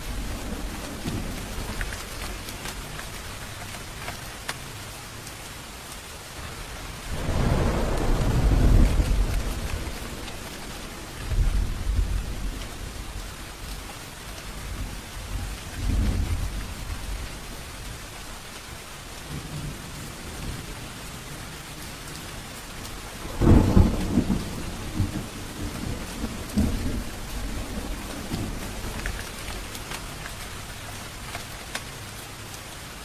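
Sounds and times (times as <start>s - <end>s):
thunder rumbling: 0.0s - 4.4s, 6.4s - 18.1s, 22.9s - 31.2s
steady rain falling: 0.0s - 33.0s
loud thunder clap: 7.1s - 12.7s, 23.2s - 29.4s.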